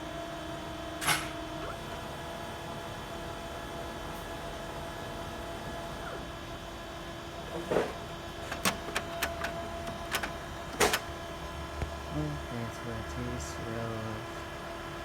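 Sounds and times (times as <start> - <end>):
laser printer humming: 8.2 - 15.0.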